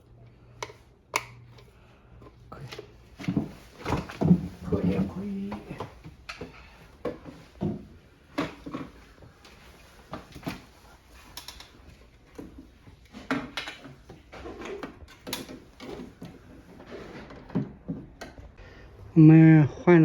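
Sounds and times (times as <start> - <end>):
tools and parts clicking and knocking: 5.8 - 16.5.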